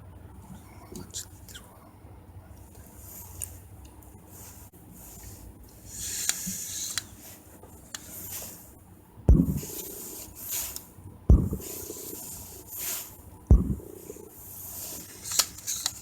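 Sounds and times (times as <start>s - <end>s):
dull knocks: 9.3s - 9.8s, 11.3s - 11.7s, 13.5s - 13.9s
small clicks: 15.2s - 16.0s.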